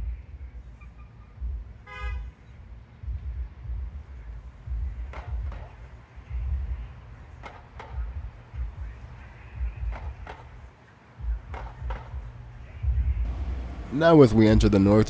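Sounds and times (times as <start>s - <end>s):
low rumble: 13.3s - 15.0s.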